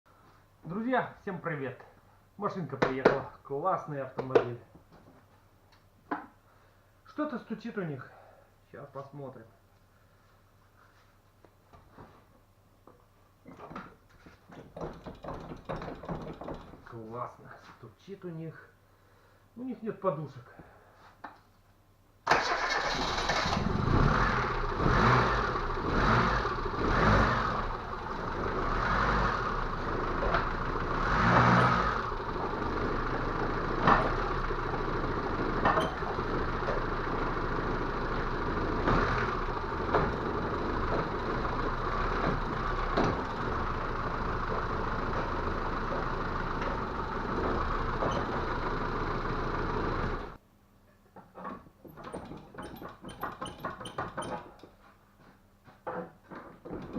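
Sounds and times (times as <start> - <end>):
engine sharp knocks: 14.7 - 16.9
car engine revving: 22.5 - 50.4.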